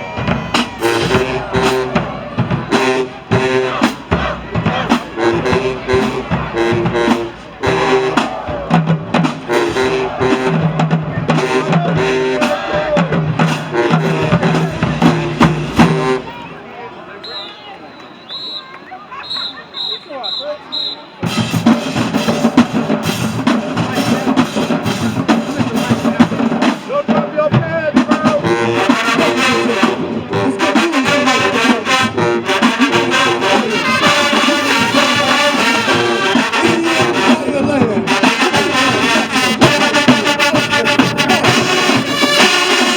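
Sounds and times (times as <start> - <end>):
snare drum strikes: 0.3 - 16.1
brass chord stabs: 0.5 - 16.4, 28.3 - 42.9.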